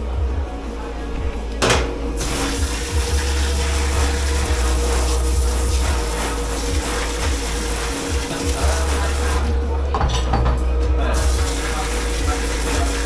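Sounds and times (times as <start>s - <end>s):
clunk: 1.6s - 2.1s
water running into a sink: 1.6s - 10.1s, 11.2s - 13.0s.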